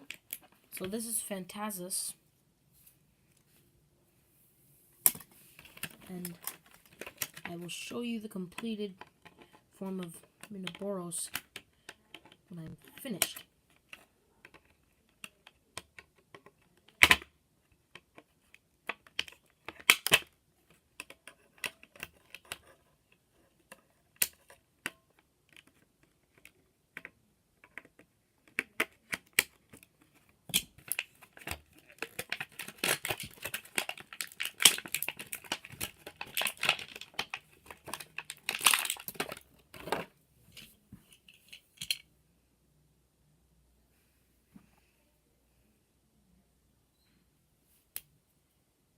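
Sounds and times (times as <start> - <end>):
plastic toy parts clicking: 5.0 - 7.7, 17.9 - 22.8, 23.5 - 42.0
packaging crinkling: 30.8 - 40.0.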